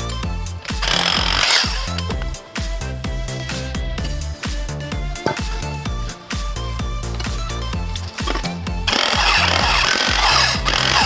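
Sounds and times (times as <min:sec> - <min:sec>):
background music with steady beat: 0:00.0 - 0:11.0
power tool on metal: 0:00.7 - 0:02.1, 0:08.1 - 0:11.0.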